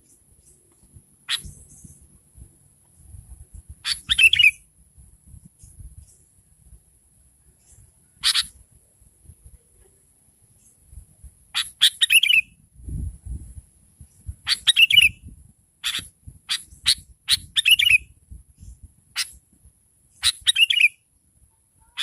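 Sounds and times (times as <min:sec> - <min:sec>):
bird chattering calls: 0:01.3 - 0:02.0, 0:03.8 - 0:04.6, 0:08.2 - 0:08.6, 0:15.8 - 0:18.0.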